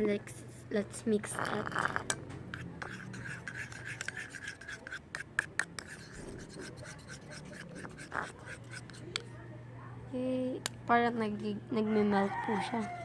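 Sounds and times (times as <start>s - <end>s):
spoon scraping a bowl: 1.2s - 9.3s, 12.1s - 13.0s.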